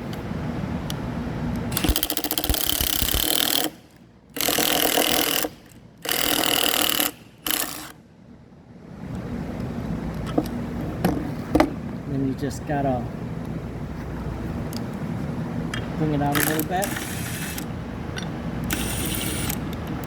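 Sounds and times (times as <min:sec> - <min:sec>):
impact driver hammering: 0:04.4 - 0:08.0.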